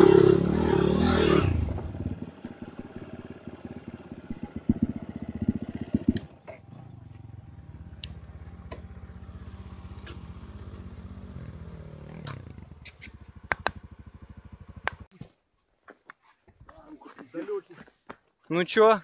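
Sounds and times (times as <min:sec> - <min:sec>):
motorcycle engine idling: 0:01.6 - 0:15.1.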